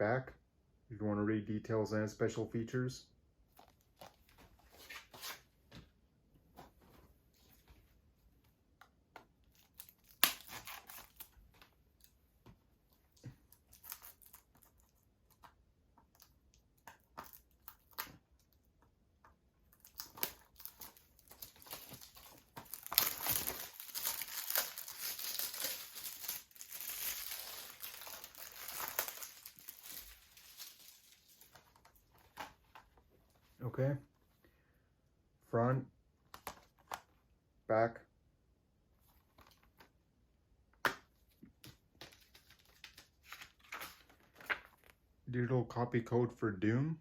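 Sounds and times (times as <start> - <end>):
plastic wrap tearing: 9.5 - 11.4, 19.7 - 31.8
plastic wrap crinkling: 13.5 - 15.5, 19.7 - 32.5.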